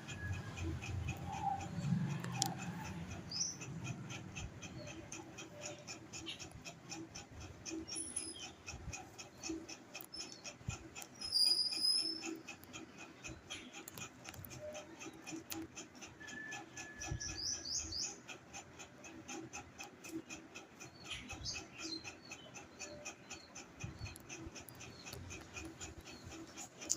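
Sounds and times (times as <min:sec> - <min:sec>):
steady fast ticking: 0:00.0 - 0:26.9
parrot chirping: 0:10.2 - 0:12.6.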